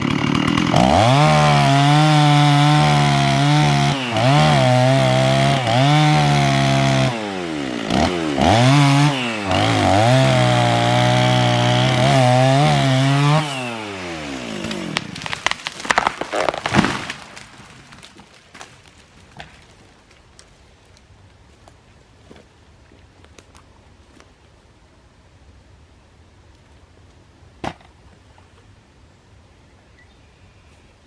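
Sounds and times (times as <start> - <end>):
tree cracking and snapping: 0.0 - 7.1, 14.3 - 21.1
chainsaw cutting at high revs: 0.0 - 17.4
tree hitting the ground: 14.5 - 20.2.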